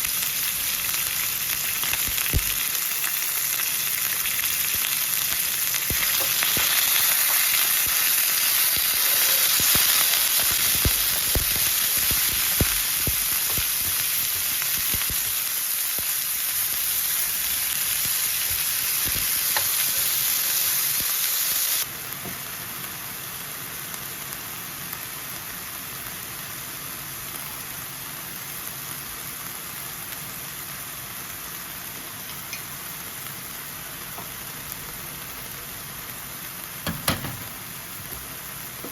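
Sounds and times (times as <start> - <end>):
food sizzling on a hot plate: 0.0 - 38.9
utensil knocking and scraping: 36.9 - 38.9.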